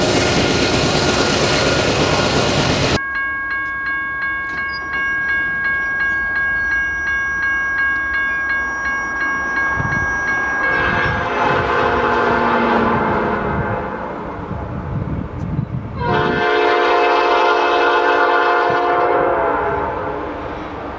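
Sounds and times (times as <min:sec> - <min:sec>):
railroad bell ringing: 0:00.0 - 0:14.5
train rumbling: 0:00.0 - 0:20.9.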